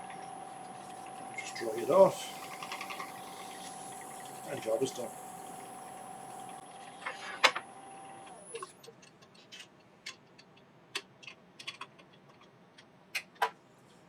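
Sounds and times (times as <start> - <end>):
lathe motor whine: 0.0 - 8.6.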